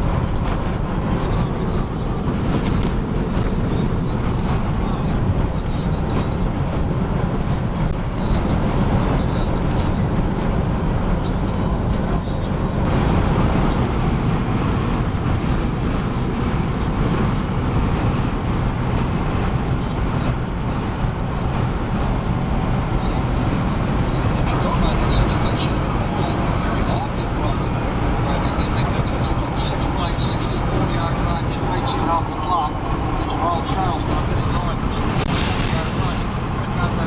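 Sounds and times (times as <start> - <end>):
road and wind noise in car: 0.0 - 37.0.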